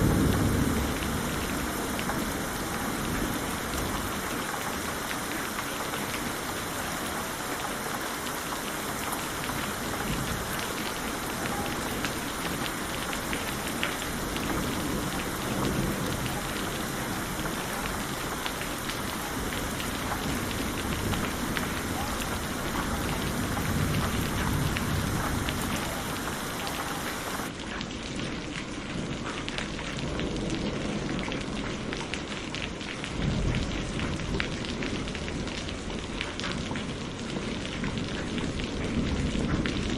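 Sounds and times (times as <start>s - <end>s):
low rolling thunder: 0.0s - 4.4s, 9.4s - 27.5s, 36.8s - 39.9s
heavy rain falling: 0.0s - 39.9s.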